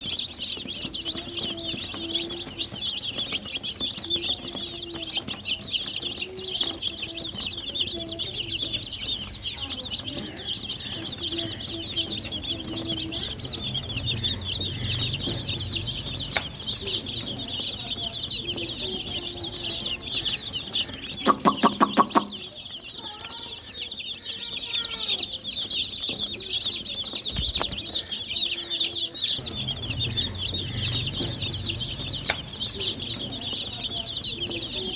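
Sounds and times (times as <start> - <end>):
chicks peeping: 0.0 - 34.9
loud rapid bird calls: 0.0 - 34.9
hen clucking: 8.0 - 22.7, 27.3 - 34.9.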